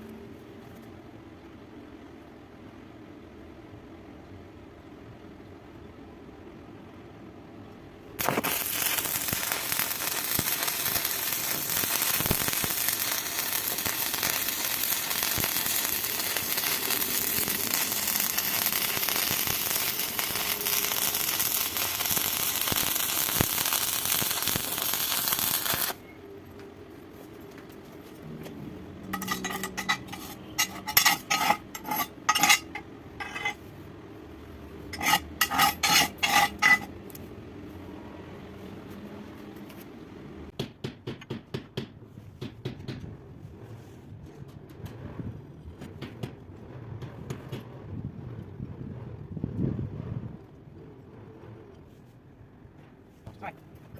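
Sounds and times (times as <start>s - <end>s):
welding arc crackling: 8.2s - 26.0s, 29.1s - 33.6s.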